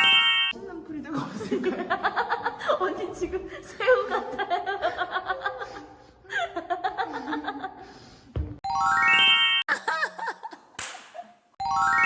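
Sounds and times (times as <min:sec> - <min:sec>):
rising bell-like chime notes: 0:00.0 - 0:00.6, 0:08.6 - 0:09.7, 0:11.6 - 0:12.0
hearty laughter: 0:03.9 - 0:07.9.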